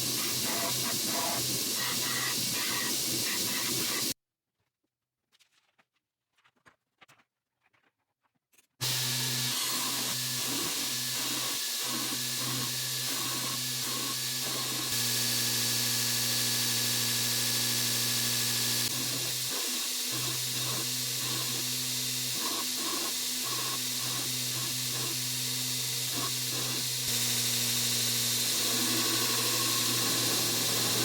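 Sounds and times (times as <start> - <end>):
belt grinder grinding steel: 0.0 - 4.2, 8.8 - 31.0
motor hum: 8.8 - 31.0.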